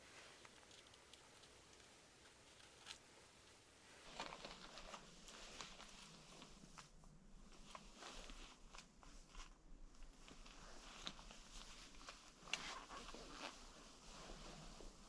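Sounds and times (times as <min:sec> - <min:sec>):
faint rustles: 0:00.0 - 0:15.0.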